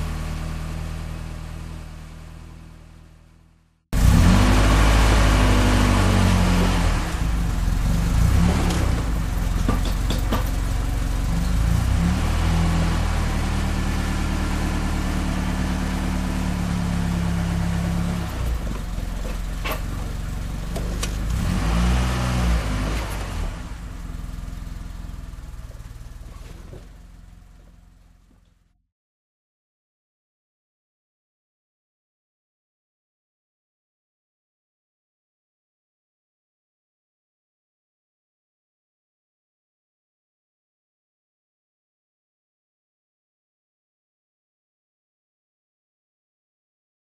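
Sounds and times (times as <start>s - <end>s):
car engine revving: 4.0s - 28.0s.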